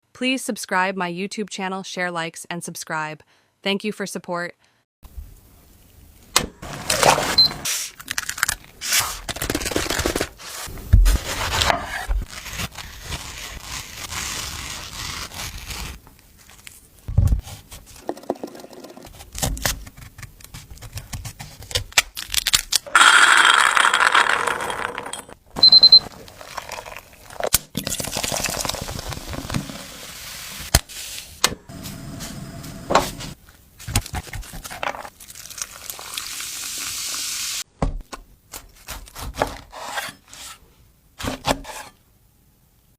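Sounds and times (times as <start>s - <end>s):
short high beep: 25.6s - 26.0s.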